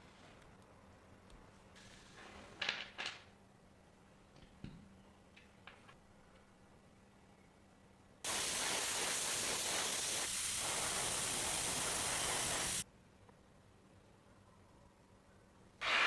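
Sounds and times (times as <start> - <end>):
pressurised spray hissing: 8.3 - 12.8.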